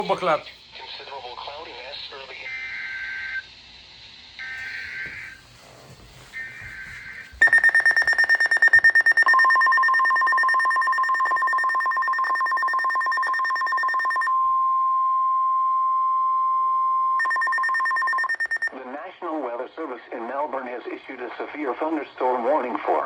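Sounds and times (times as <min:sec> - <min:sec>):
steady low warning tone: 0:04.4 - 0:18.7
fast-pulsing high beeping alarm: 0:06.3 - 0:14.3, 0:17.1 - 0:18.7.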